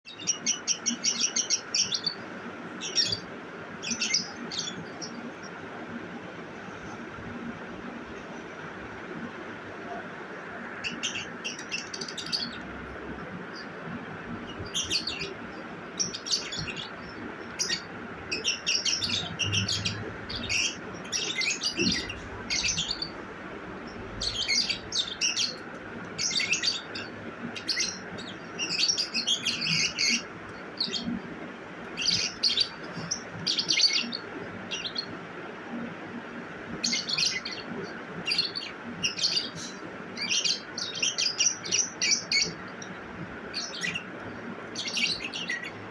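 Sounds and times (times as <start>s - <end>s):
lovebird chirping: 14.6s - 23.2s, 36.8s - 45.8s.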